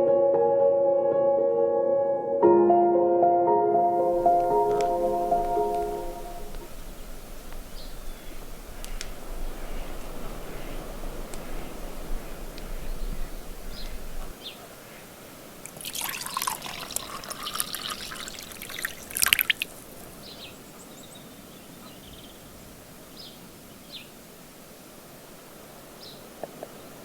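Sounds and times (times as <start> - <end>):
water pouring: 15.6 - 19.8
water splash: 15.6 - 19.9.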